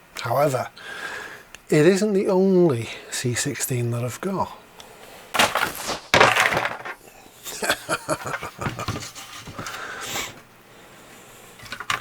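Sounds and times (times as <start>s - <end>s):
loud rustling: 5.3s - 7.0s
small clicks and knocks: 11.6s - 12.0s.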